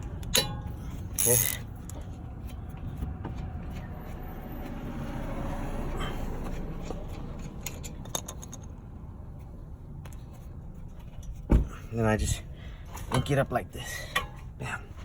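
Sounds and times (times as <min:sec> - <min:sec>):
ratchet wrench clicking: 0:00.2 - 0:02.6.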